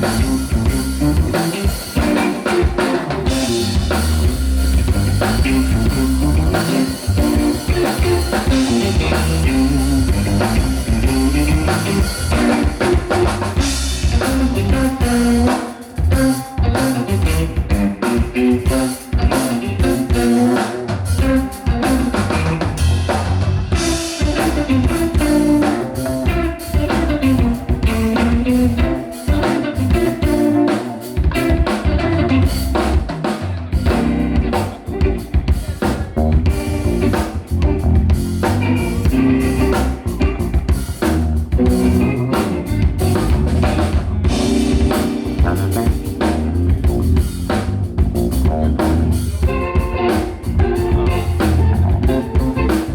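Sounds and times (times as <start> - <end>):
band playing: 0.0 - 52.9
guitar: 0.0 - 52.9
low bass notes: 0.0 - 52.9
drum kit kick and snare: 32.5 - 52.9.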